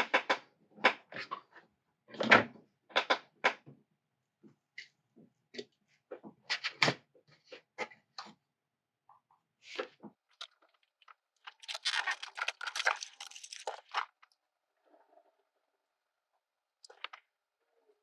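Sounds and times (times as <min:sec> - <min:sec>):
small tools and plastic parts clicking: 0:10.4 - 0:14.4.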